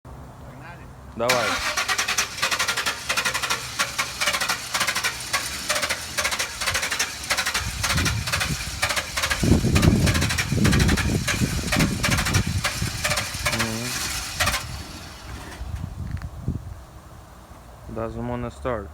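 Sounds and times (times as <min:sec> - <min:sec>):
starter motor cranking engine: 0:01.3 - 0:16.0
deep rumble: 0:03.6 - 0:16.8.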